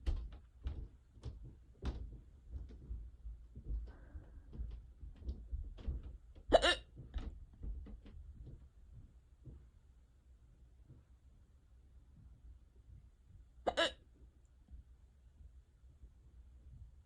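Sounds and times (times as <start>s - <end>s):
person hiccuping: 6.5s - 6.9s, 13.7s - 14.0s.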